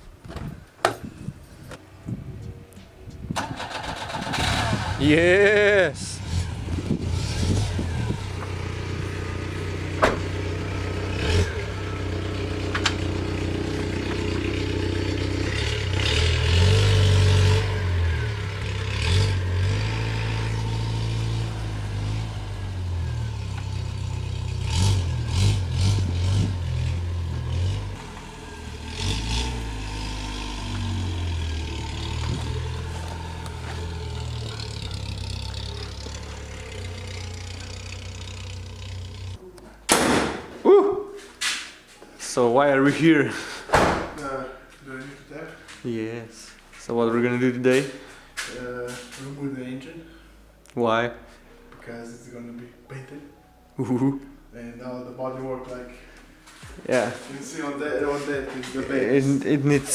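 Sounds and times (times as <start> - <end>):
car engine revving: 3.4 - 39.4.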